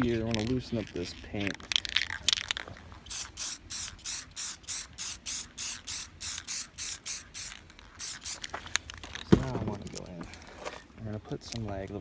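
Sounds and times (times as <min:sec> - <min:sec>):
aerosol spray can hissing: 0:03.0 - 0:08.5.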